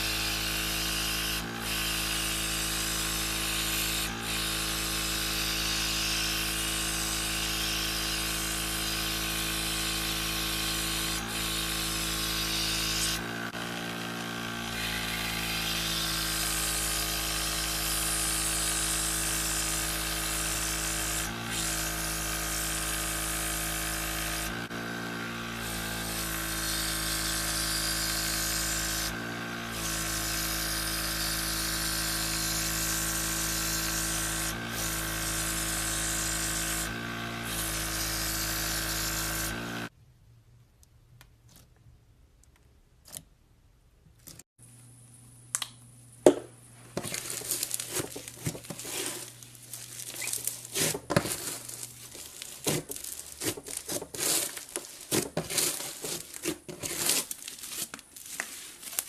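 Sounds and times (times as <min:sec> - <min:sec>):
small electric motor whirring: 0:00.0 - 0:39.9
crinkling and handling noises: 0:46.8 - 0:59.0.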